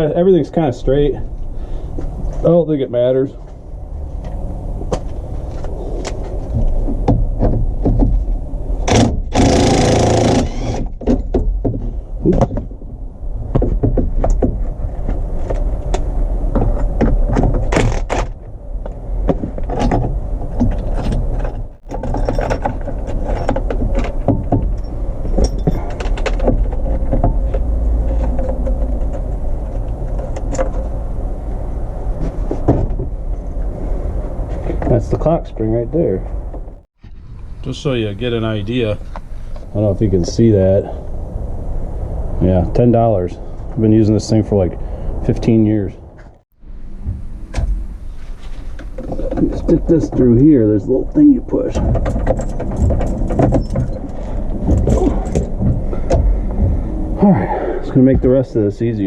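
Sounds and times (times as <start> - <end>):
harsh rasping burst: 8.9 - 11.0
low rumble: 18.3 - 49.3, 50.2 - 59.0.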